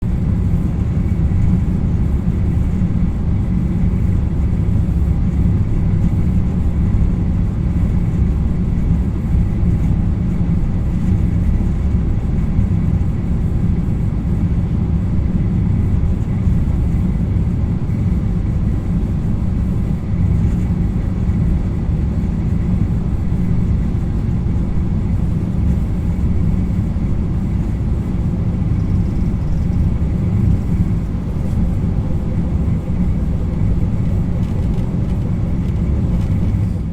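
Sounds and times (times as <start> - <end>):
electric motor hum: 24.6 - 36.9.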